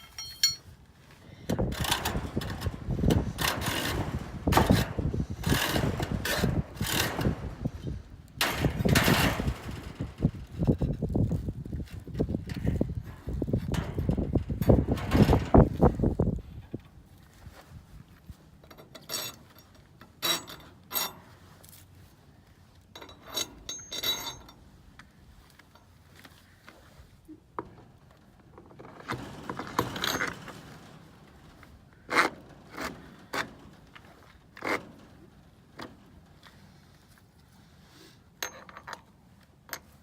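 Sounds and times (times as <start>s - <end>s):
metal scraping: 0.0s - 0.7s, 1.7s - 11.4s
metal tools clinking and knocking: 0.0s - 0.7s, 18.6s - 21.3s, 22.9s - 24.6s, 28.8s - 30.5s, 38.4s - 39.1s.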